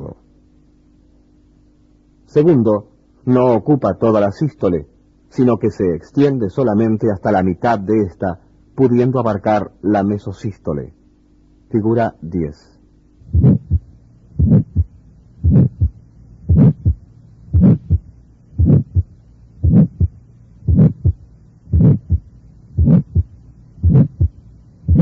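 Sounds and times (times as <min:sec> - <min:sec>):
heartbeat with murmur: 0:13.2 - 0:25.0.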